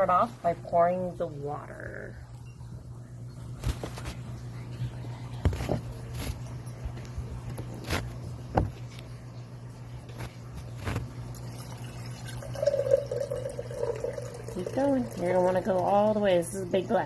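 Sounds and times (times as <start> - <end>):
water pouring into a glass: 11.3 - 16.0.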